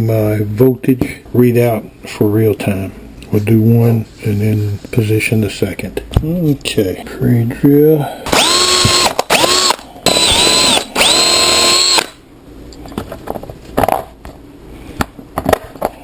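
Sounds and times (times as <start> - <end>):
power drill whining: 8.3 - 12.2.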